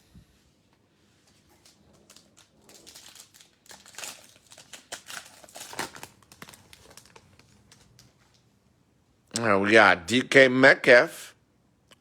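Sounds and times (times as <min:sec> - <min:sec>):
plastic wrapper crinkling: 0:01.4 - 0:08.5.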